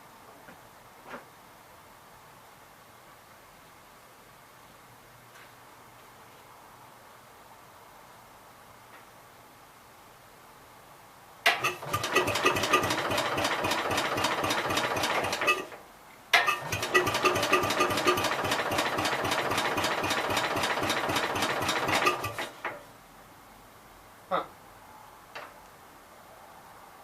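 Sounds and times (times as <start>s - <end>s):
engine cranking with starter: 11.5s - 15.8s, 16.4s - 22.8s.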